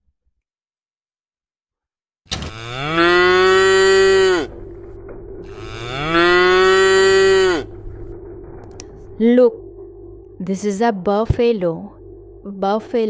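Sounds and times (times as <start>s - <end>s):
ox mooing: 2.4s - 9.2s.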